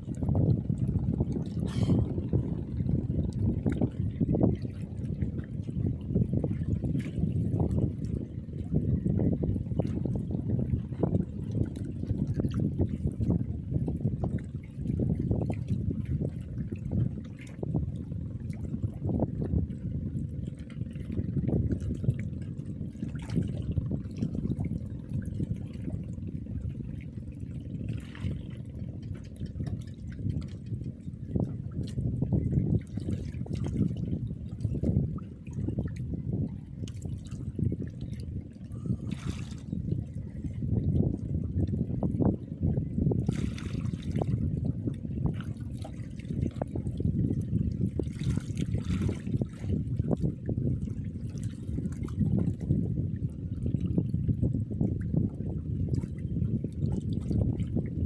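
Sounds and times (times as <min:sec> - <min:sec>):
water sloshing and lapping: 0:00.0 - 0:58.0
small water splashes: 0:32.8 - 0:40.6, 0:43.2 - 0:44.4, 0:45.2 - 0:52.7.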